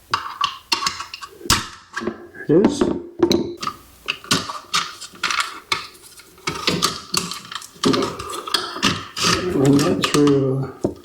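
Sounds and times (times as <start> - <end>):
hands handling electrical cable: 3.6 - 11.0.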